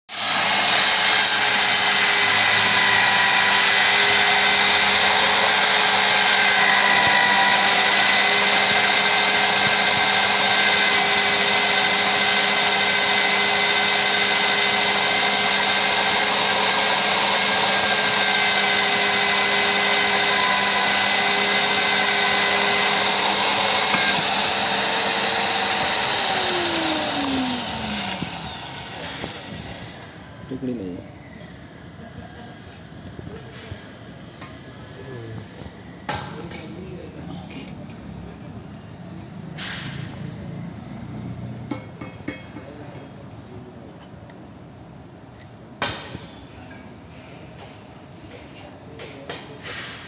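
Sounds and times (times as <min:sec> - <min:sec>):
electric impact drill whining: 0:00.1 - 0:30.3.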